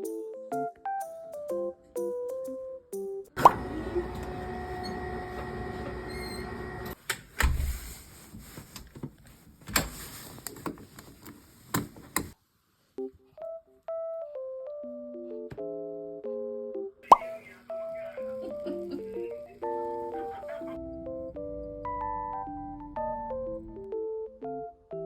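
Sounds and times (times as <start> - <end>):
light keyboard tune: 0.0 - 6.9, 13.0 - 25.0.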